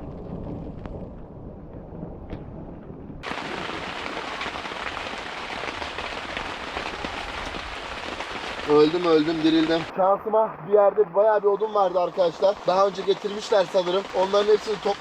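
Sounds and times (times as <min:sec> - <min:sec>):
low rumble: 0:00.0 - 0:03.3
heavy rain falling: 0:03.2 - 0:10.0, 0:11.2 - 0:15.0.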